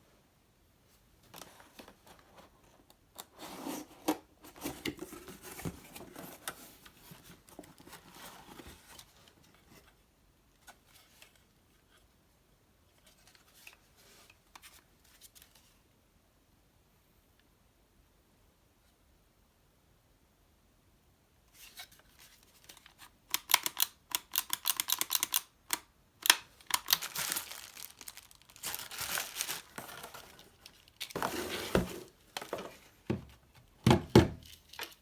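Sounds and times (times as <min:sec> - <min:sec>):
hard objects clicking and scraping: 0:23.4 - 0:32.9.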